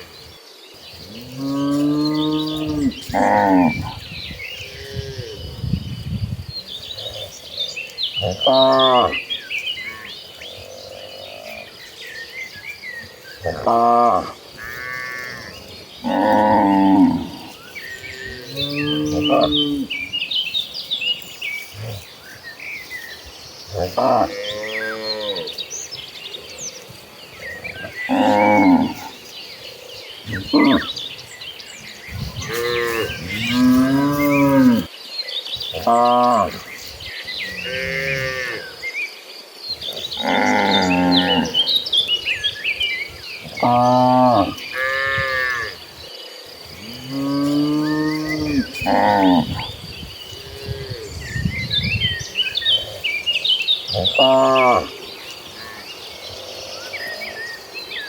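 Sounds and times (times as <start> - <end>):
birds chirping faintly: 0.0 - 58.0
high insect trill: 0.0 - 58.0
cattle mooing: 32.4 - 34.9.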